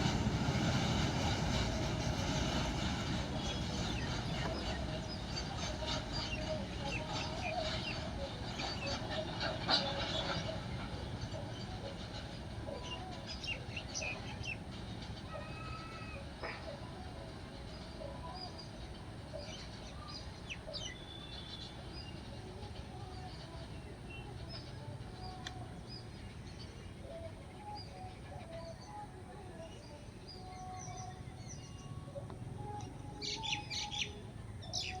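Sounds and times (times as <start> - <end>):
small birds chirping: 23.0 - 35.0.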